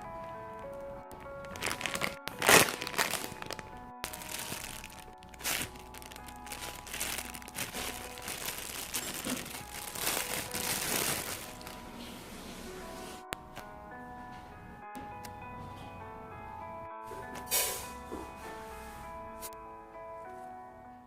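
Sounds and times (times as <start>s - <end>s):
background music: 0.0s - 21.0s
plastic packaging crinkling: 0.7s - 12.0s.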